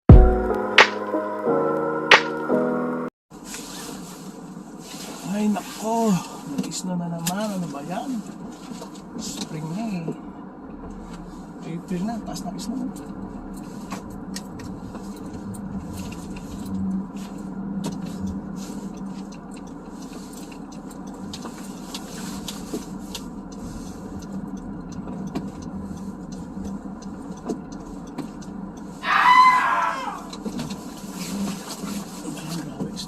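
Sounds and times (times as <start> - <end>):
car cabin hum: 4.3 - 33.0
light ticks: 6.2 - 11.3, 11.9 - 29.0.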